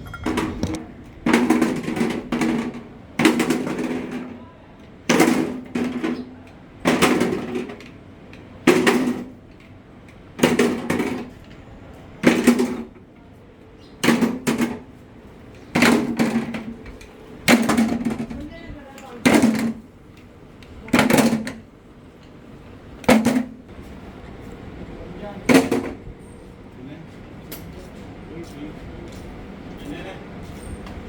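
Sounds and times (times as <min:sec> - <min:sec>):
ringing metal strikes: 0:00.0 - 0:00.9.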